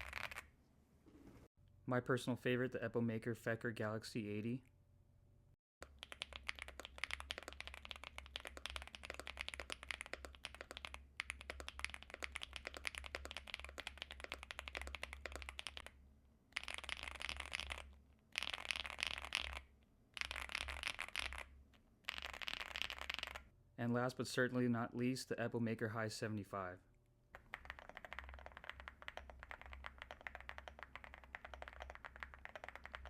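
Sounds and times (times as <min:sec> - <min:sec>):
typing on mechanical keyboard: 0:05.8 - 0:15.9, 0:16.6 - 0:19.6, 0:27.4 - 0:33.0.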